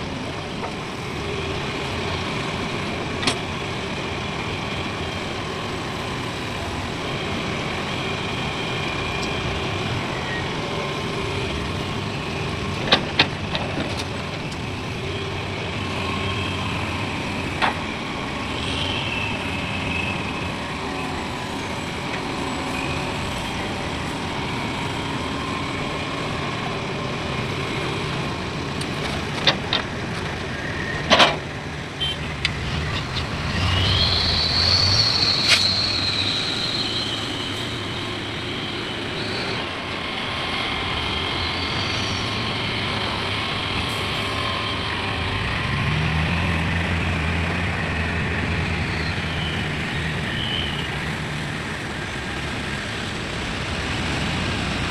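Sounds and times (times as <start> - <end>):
heavy diesel machinery running: 0.0 - 54.9
high whine: 30.4 - 52.2
engine rising in pitch: 32.0 - 51.6.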